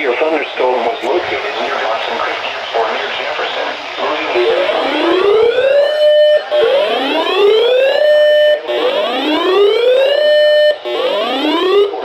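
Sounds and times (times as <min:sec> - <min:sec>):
rising electronic siren whoop: 0:04.8 - 0:11.9.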